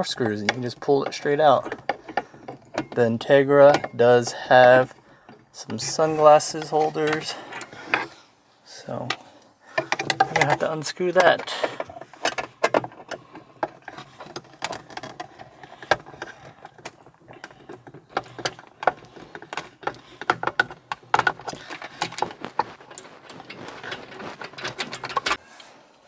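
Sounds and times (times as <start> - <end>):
screwdriver clicks and rattles: 9.8 - 25.4.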